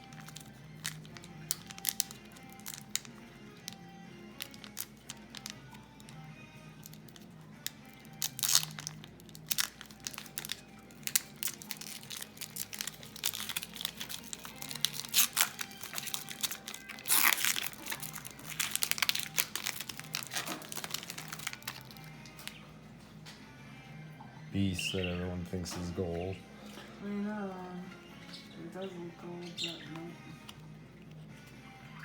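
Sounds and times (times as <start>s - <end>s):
wrapper crinkling and tearing: 0.0s - 3.8s, 4.4s - 6.2s, 6.8s - 22.5s.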